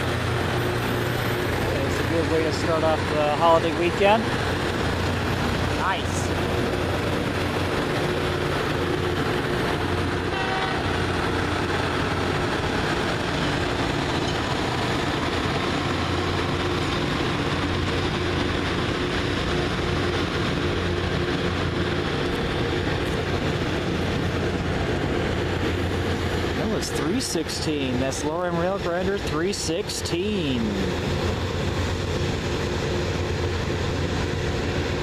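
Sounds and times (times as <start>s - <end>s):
diesel engines humming: 0.0s - 35.0s
rail grinder train passing: 0.0s - 35.0s.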